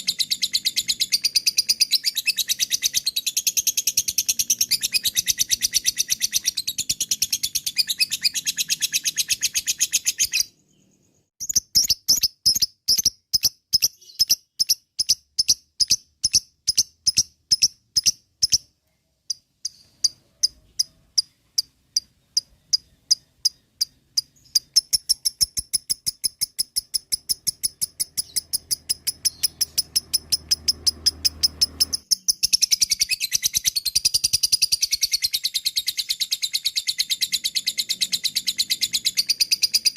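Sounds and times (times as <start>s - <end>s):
lovebird chattering calls: 0.0s - 10.5s, 19.3s - 39.9s.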